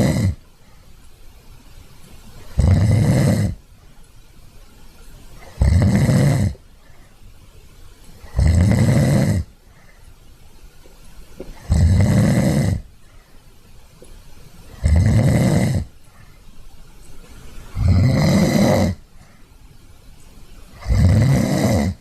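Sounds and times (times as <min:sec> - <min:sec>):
loud snoring: 0:00.0 - 0:00.4, 0:02.5 - 0:03.6, 0:05.4 - 0:06.6, 0:08.2 - 0:09.5, 0:11.6 - 0:12.9, 0:14.7 - 0:16.0, 0:17.7 - 0:19.0, 0:20.8 - 0:22.0.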